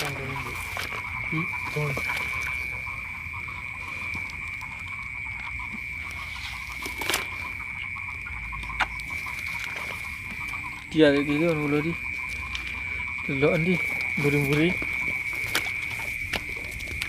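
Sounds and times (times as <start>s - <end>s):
frogs trilling: 0.0s - 17.0s.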